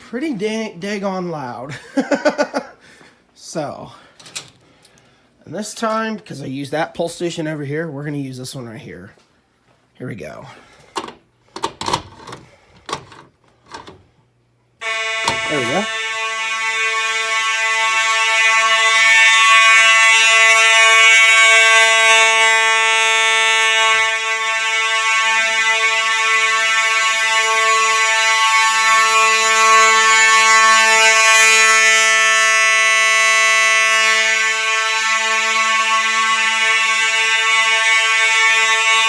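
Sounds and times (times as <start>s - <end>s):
fire alarm horn buzzing: 1.1s - 2.8s, 14.8s - 39.0s.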